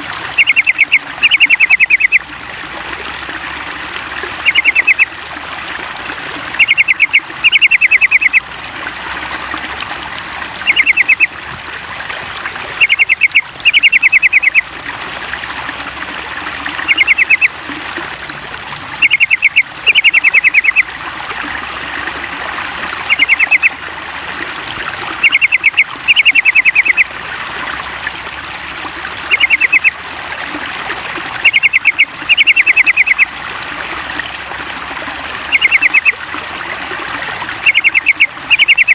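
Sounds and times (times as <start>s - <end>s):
running water trickling: 0.0s - 38.9s
bird call rapid chirps: 0.3s - 2.2s, 4.4s - 5.1s, 6.6s - 8.4s, 10.6s - 11.3s, 12.8s - 14.6s, 16.8s - 17.5s, 19.0s - 20.9s, 23.1s - 23.8s, 25.2s - 27.1s, 29.2s - 30.0s, 31.4s - 33.3s, 35.5s - 36.2s, 37.6s - 38.9s.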